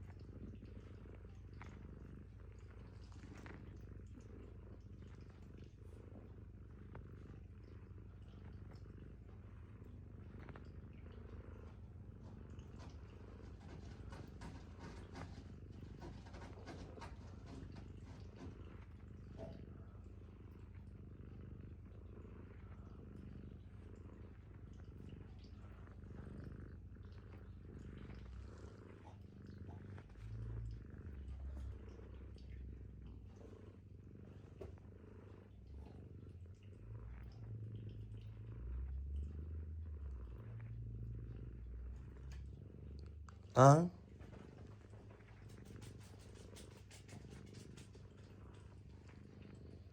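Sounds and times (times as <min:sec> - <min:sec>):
soft rustles: 0:00.0 - 0:23.1, 0:44.0 - 0:49.9
cat purring: 0:00.0 - 0:49.9.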